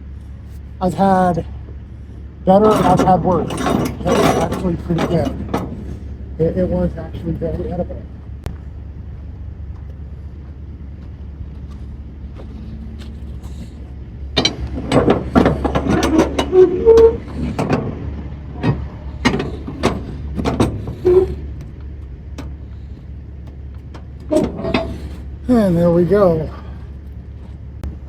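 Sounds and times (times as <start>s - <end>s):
steady low hum: 0.0s - 28.0s
metal clanks and clicks: 2.5s - 7.5s, 12.4s - 25.4s.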